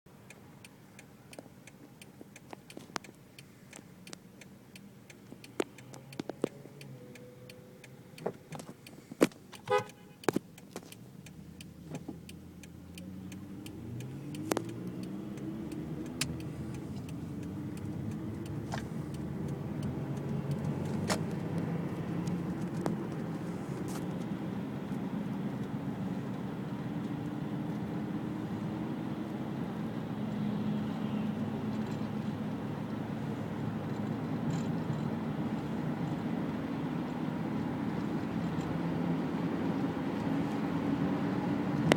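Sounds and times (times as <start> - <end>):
scattered clicks: 0.2 - 24.4
car engine accelerating: 0.2 - 41.9
car horn toot: 9.6 - 10.3.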